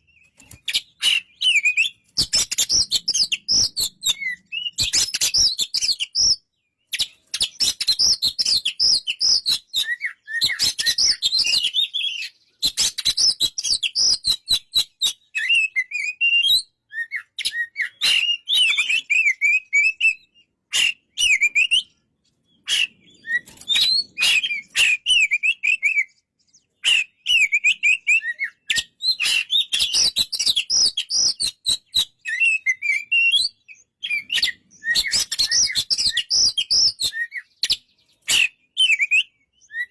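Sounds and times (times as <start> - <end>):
bird singing whistled phrases: 0.0 - 22.0, 22.6 - 39.9.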